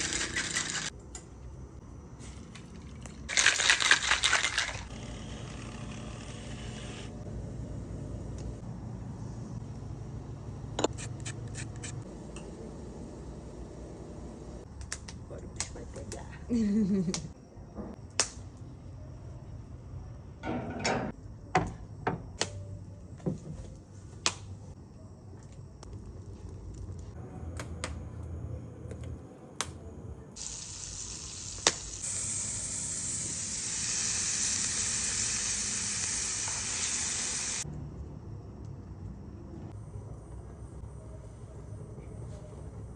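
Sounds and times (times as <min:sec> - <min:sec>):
meat sizzling on a grill: 0:30.4 - 0:37.6.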